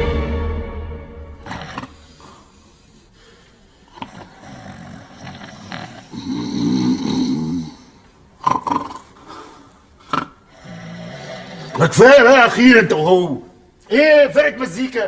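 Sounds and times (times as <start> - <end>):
men snoring: 1.4 - 2.7, 3.8 - 11.8.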